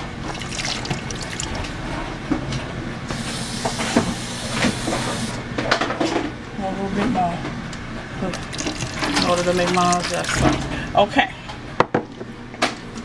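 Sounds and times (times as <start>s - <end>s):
water pouring: 0.2s - 1.8s, 8.4s - 10.6s.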